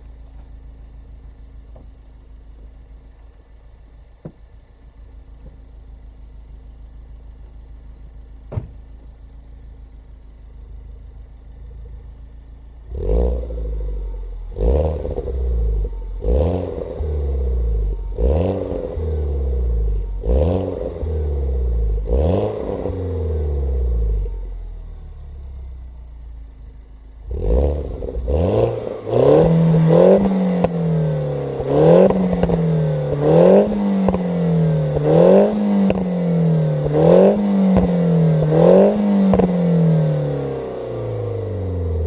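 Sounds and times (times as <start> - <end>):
car engine idling and revving: 0.0 - 42.0
sharp exhaust cracks: 27.2 - 42.0.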